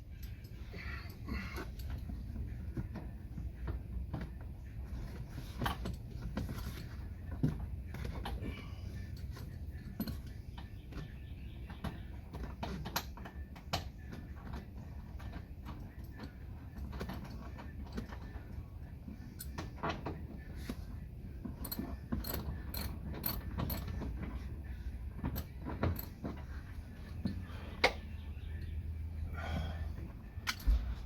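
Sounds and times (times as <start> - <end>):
metal tools clinking and knocking: 5.6 - 10.7, 21.5 - 24.4.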